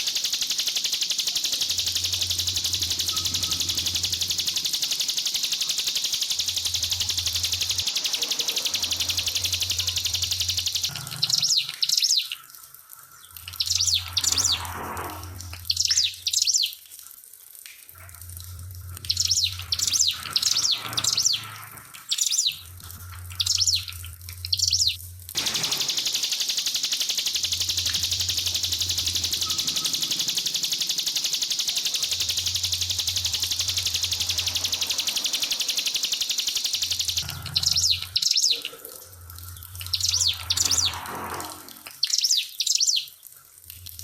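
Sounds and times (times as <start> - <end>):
low hum: 0.0 - 11.3, 22.6 - 38.2
steady high hiss: 0.0 - 11.4, 12.4 - 41.4
songbird singing rapid high song: 0.0 - 12.3, 24.5 - 38.6.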